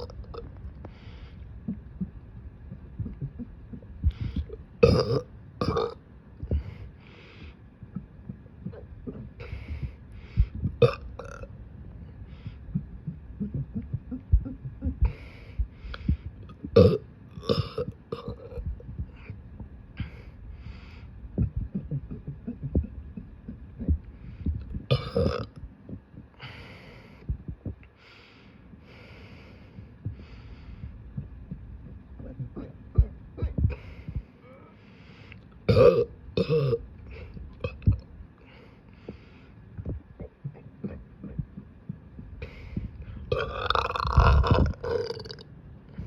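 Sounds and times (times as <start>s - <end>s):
soft low thumps: 0.0s - 28.0s, 28.6s - 34.4s, 35.7s - 38.4s, 39.0s - 46.0s
person burping: 4.8s - 6.0s, 10.8s - 11.4s, 16.8s - 18.4s, 24.9s - 25.5s, 35.7s - 36.8s, 43.3s - 45.4s.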